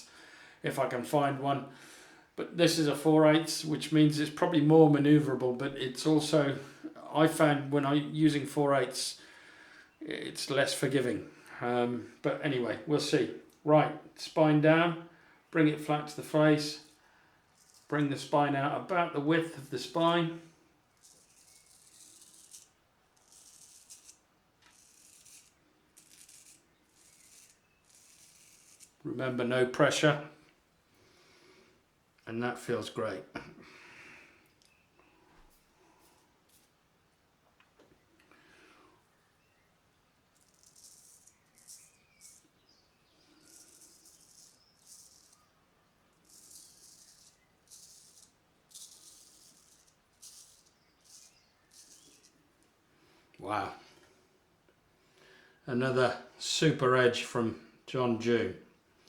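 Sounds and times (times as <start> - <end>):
razor scraping whiskers: 16.6 - 18.3, 20.9 - 29.0, 40.4 - 52.5.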